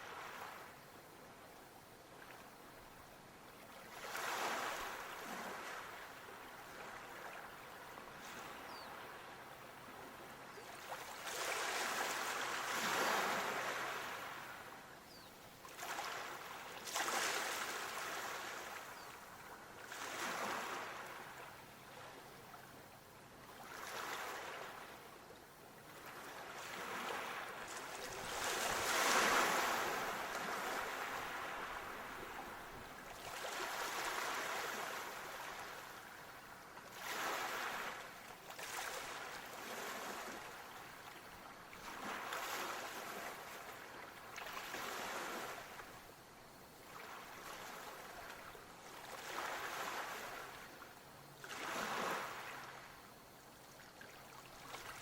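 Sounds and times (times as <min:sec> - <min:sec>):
waves washing in: 0:10.8 - 0:14.7, 0:15.8 - 0:19.0, 0:19.8 - 0:21.5, 0:26.0 - 0:36.2, 0:36.9 - 0:41.1, 0:51.4 - 0:52.9.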